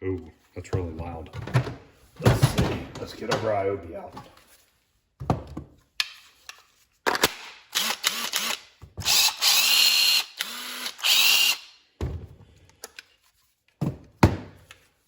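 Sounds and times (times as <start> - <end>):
cordless drill whirring: 7.7 - 11.8.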